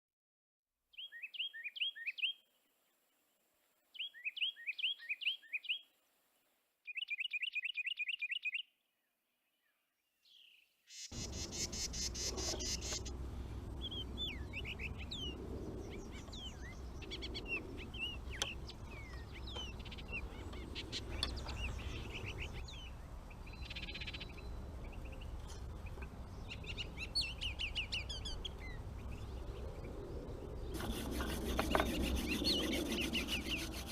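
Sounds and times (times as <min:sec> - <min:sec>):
songbird chirping: 0:00.9 - 0:33.9
scattered bird calls: 0:10.3 - 0:33.9
steady low rumble: 0:11.2 - 0:33.9.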